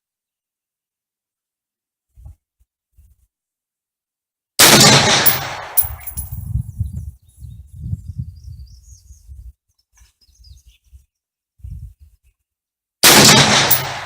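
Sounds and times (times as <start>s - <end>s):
rifle shot: 4.6s - 6.4s, 13.0s - 14.0s.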